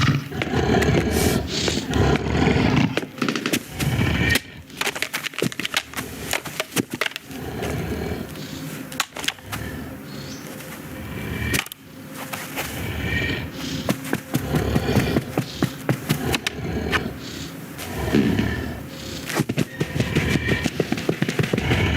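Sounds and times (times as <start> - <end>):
low background noise: 0.0 - 21.9.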